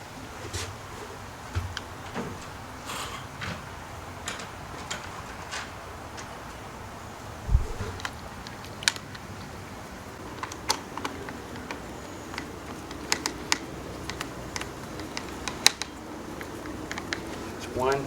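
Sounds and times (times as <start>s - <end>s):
dull thump: 7.4s - 8.0s.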